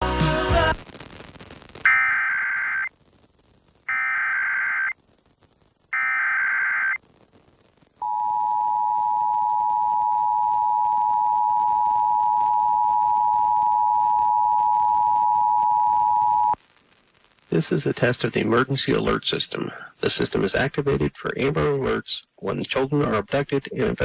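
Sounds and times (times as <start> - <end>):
warbling digital data tones: 1.9 - 2.9.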